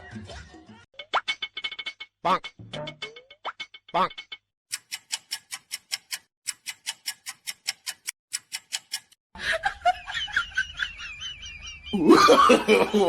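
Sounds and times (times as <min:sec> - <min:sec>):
sharp clock-like ticking: 0:04.0 - 0:09.2.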